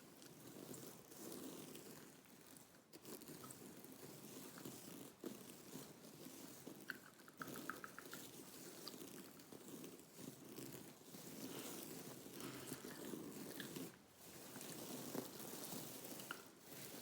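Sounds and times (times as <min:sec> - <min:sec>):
gum chewing: 0:06.8 - 0:08.2, 0:12.4 - 0:13.8.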